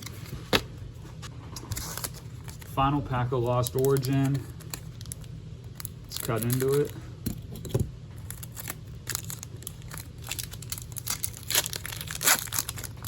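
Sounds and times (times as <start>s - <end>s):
foil wrapper crinkling: 1.6s - 7.0s, 8.2s - 13.0s.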